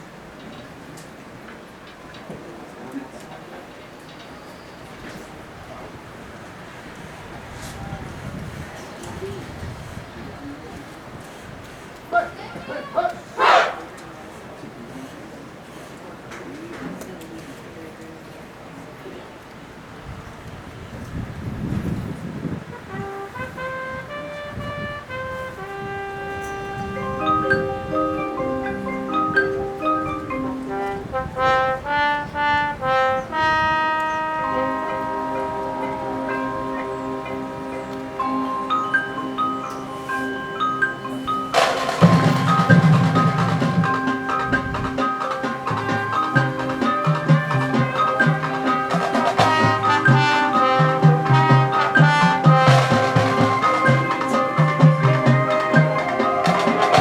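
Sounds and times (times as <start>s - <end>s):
marching band playing: 13.4s - 14.0s, 22.9s - 57.0s
mallet percussion: 26.5s - 31.3s, 34.6s - 57.0s.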